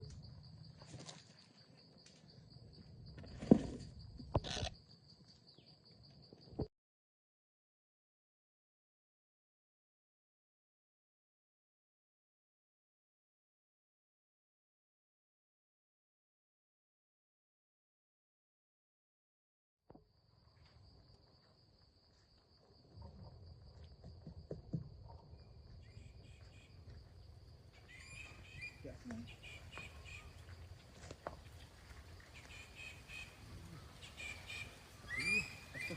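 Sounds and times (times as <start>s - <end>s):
high-pitched cricket trill: 0.0s - 6.7s, 20.1s - 35.9s
knocks and rustles: 3.2s - 4.7s
thump: 3.3s - 4.5s
insect trilling: 32.2s - 35.9s
short bird chirps: 34.0s - 35.9s.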